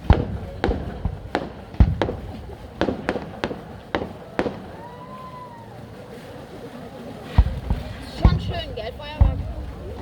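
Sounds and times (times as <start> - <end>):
fireworks bursting with sharp bangs: 0.0 - 5.3, 7.2 - 10.0.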